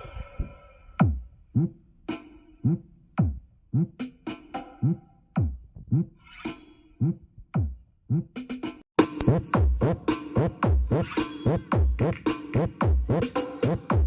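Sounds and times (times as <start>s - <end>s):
electronic dance music through speakers: 9.0s - 14.0s.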